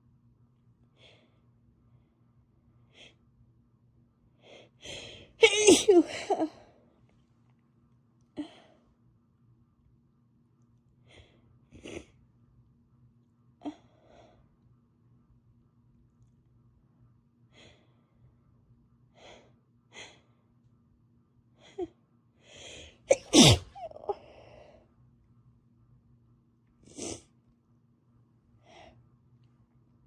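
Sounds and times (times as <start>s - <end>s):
loud sneeze: 5.4s - 6.1s, 23.1s - 24.0s.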